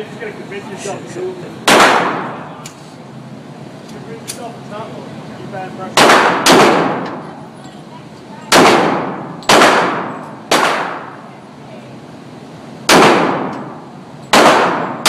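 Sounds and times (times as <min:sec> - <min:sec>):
handgun shots: 0:01.7 - 0:02.3, 0:06.0 - 0:07.2, 0:08.5 - 0:11.1, 0:12.9 - 0:13.7, 0:14.3 - 0:15.0.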